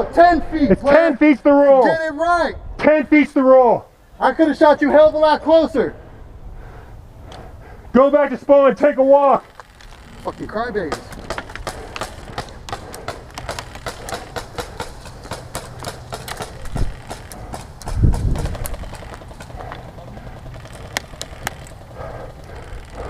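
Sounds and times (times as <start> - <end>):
quick footsteps: 9.4 - 23.0.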